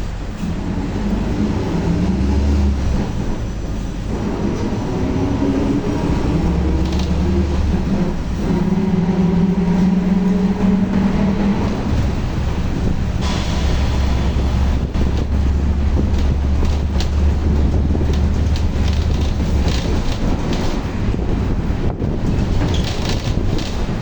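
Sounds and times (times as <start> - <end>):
bus engine running: 0.0 - 24.0
differential whine: 5.6 - 19.8.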